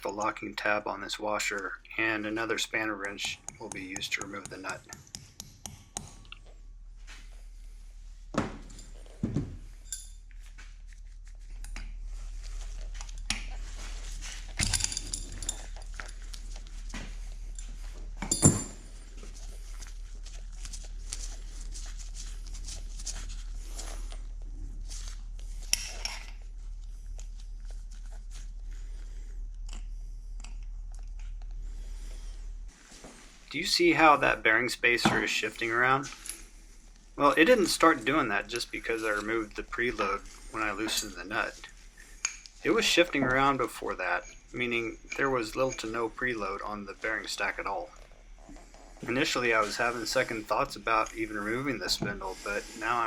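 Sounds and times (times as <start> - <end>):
steady low hum: 0.0 - 53.0
metallic taps and clinks: 14.6 - 16.2, 17.5 - 18.8.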